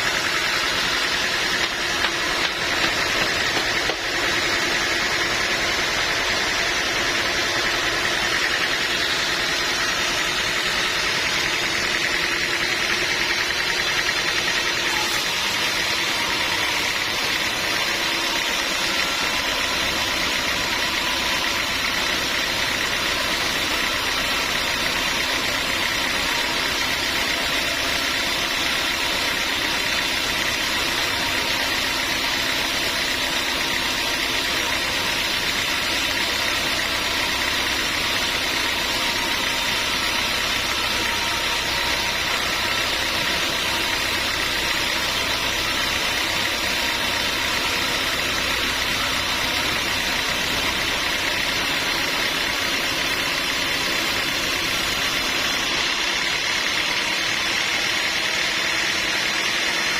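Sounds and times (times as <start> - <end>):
sawmill machinery drone: 0.0 - 59.9.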